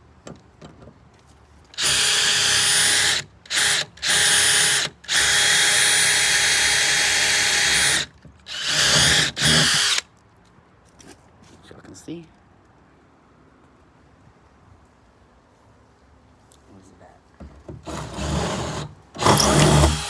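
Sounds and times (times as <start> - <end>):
power drill whining: 1.8 - 10.0, 17.9 - 20.0.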